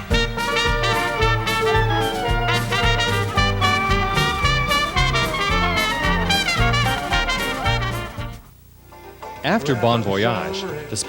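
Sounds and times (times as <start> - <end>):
jazz band with brass: 0.0 - 8.5.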